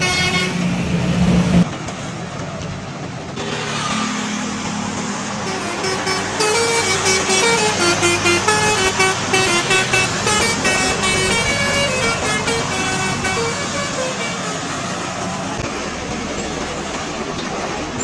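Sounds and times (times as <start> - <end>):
road noise: 0.0 - 18.0
musical air horn tune: 5.4 - 15.0.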